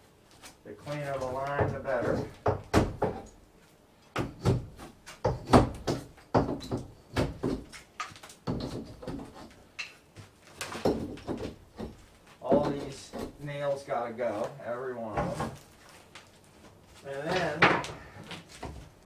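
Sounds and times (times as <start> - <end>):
tools knocking and scraping plaster: 0.8 - 3.4, 4.1 - 13.4.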